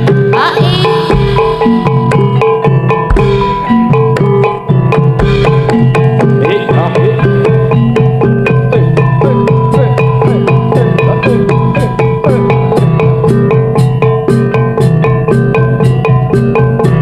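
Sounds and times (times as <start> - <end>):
gamelan music: 0.0 - 17.0
steady drum pattern: 0.0 - 17.0.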